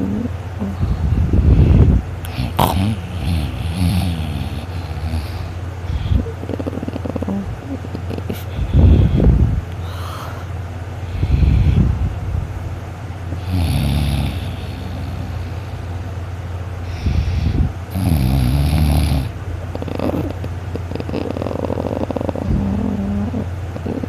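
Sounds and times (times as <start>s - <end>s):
steady low hum: 0.0s - 24.0s
rasping snores: 2.2s - 9.1s, 13.3s - 15.8s, 16.9s - 24.0s.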